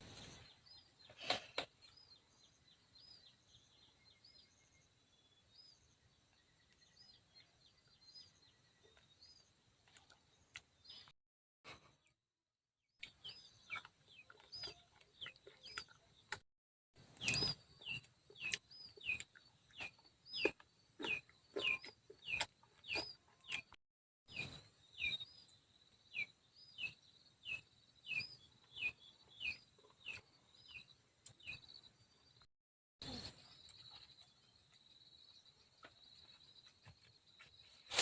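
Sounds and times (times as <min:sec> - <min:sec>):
bird chirping: 0:00.0 - 0:11.1, 0:13.0 - 0:16.4, 0:17.0 - 0:32.4, 0:33.0 - 0:38.0.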